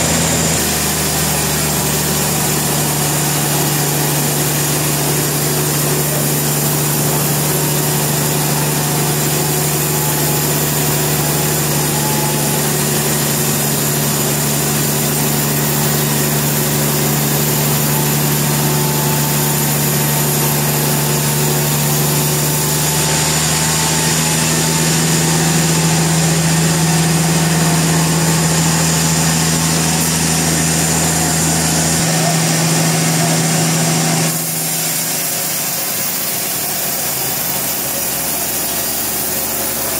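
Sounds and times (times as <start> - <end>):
sawmill engine humming: 0.0 - 39.9.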